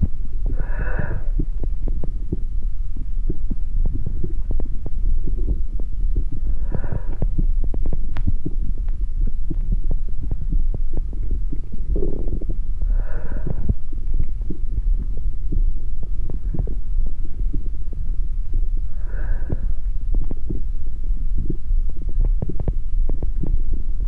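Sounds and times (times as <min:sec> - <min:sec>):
low throbbing rumble: 0:00.0 - 0:24.0.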